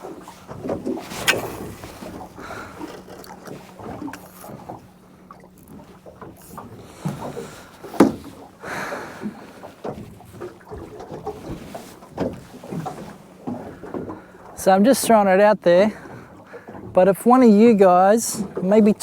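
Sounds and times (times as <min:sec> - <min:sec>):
knocks on boat: 0:00.0 - 0:14.3
water lapping against boat hull: 0:00.0 - 0:19.0.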